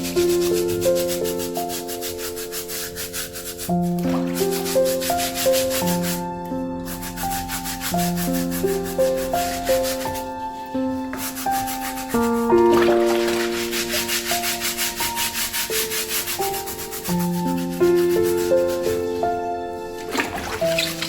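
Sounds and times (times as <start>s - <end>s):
soft instrumental music: 0.0s - 21.0s
stiff brush scrubbing: 0.5s - 6.2s, 11.2s - 17.1s, 20.0s - 21.0s.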